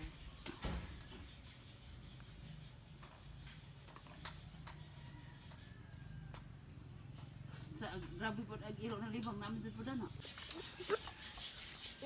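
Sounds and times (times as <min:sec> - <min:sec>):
high-pitched insect chorus: 0:00.0 - 0:12.0
thump: 0:00.5 - 0:01.0.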